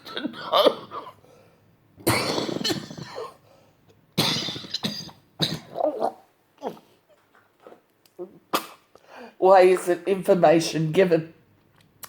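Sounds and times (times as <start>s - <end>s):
woman coughing hard: 2.0s - 3.4s, 4.2s - 5.9s.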